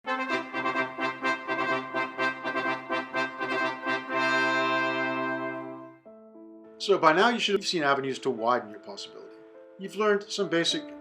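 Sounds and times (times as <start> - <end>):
brass music: 0.0 - 6.1.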